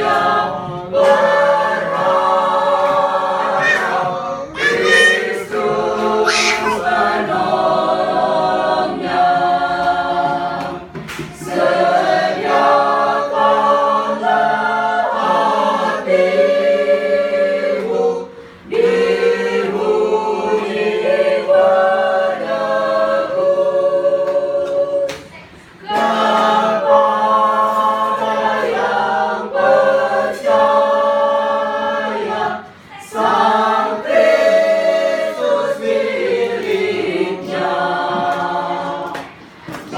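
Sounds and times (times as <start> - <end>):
church choir singing: 0.0 - 25.2, 25.8 - 39.9.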